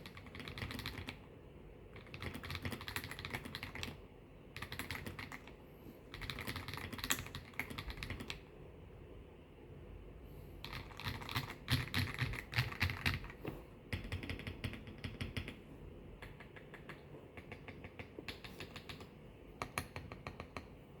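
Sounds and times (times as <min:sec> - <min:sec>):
mechanical keyboard typing: 0:00.0 - 0:01.3, 0:02.0 - 0:04.0, 0:04.6 - 0:05.5, 0:06.1 - 0:08.4, 0:10.6 - 0:15.6, 0:16.2 - 0:20.7.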